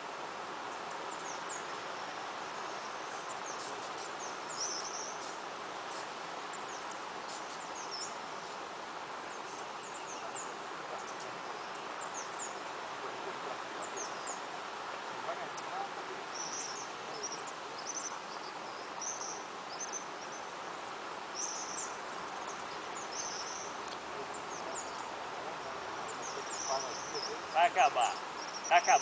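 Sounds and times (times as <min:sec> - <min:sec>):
steady hiss: 0:00.0 - 0:29.0
birds chirping: 0:00.6 - 0:29.0.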